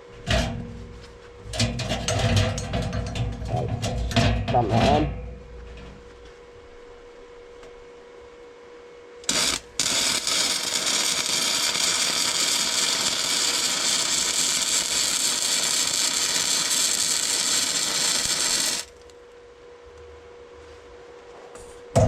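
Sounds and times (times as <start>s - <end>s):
welding arc crackling: 9.2s - 19.1s.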